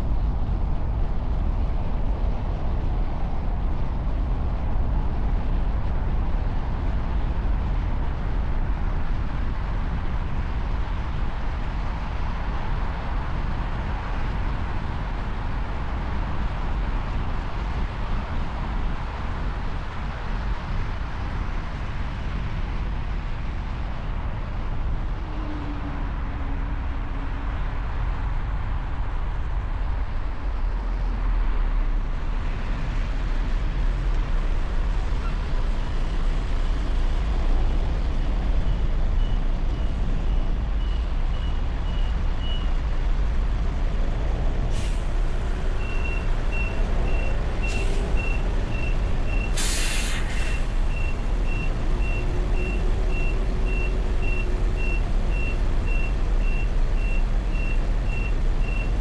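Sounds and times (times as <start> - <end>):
low rumble of engines: 0.0 - 59.0
short hisses: 44.7 - 45.2, 49.4 - 50.8.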